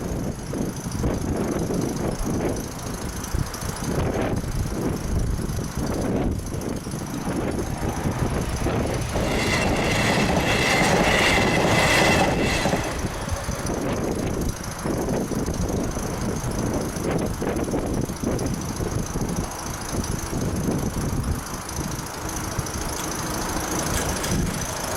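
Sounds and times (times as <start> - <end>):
electric train passing: 0.0 - 24.9.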